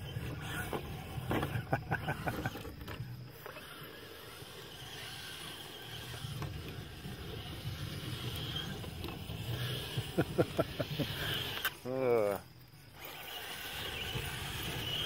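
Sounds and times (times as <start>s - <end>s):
tires and chassis clattering: 0.0s - 11.8s
electric motor and gearbox whine: 0.0s - 15.0s.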